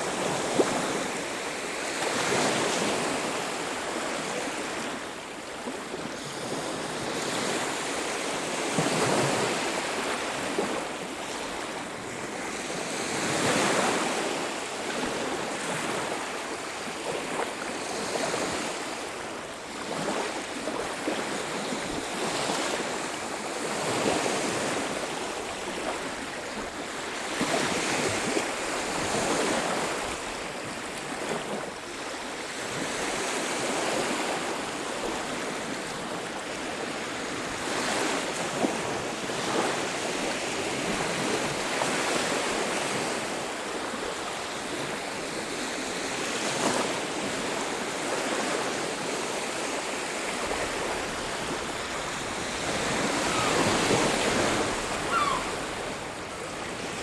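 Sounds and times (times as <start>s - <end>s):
sea waves washing onto beach: 33.4s - 57.0s.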